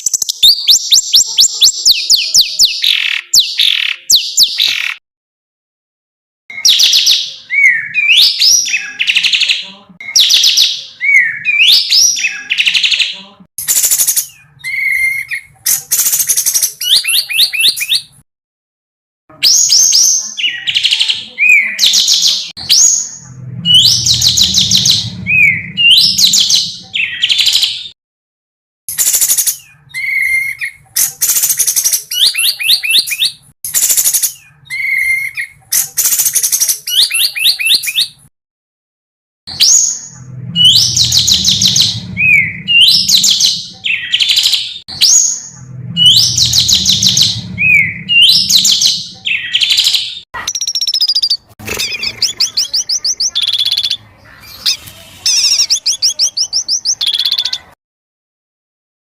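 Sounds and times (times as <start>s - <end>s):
songbird trilling: 46.1s - 57.6s.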